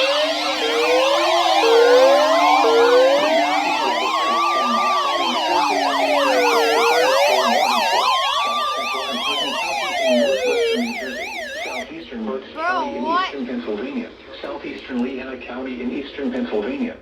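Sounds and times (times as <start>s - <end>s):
wailing siren: 0.0s - 11.9s
yelping sirens: 0.0s - 11.9s.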